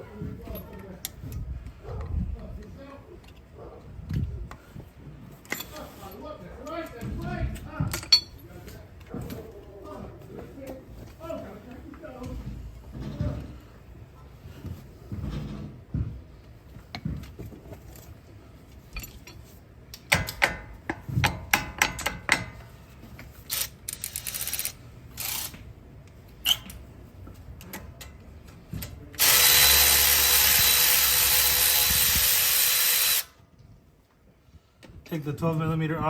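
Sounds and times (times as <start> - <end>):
power drill running: 29.2 - 33.4.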